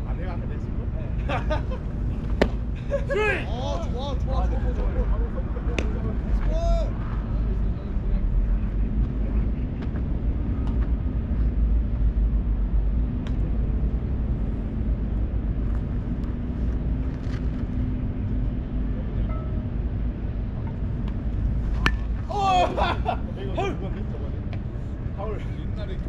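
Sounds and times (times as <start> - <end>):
low outdoor rumble: 0.0 - 26.0
player shouting: 3.0 - 3.8, 6.4 - 6.9, 22.2 - 23.8
sharp bat crack: 21.7 - 22.3.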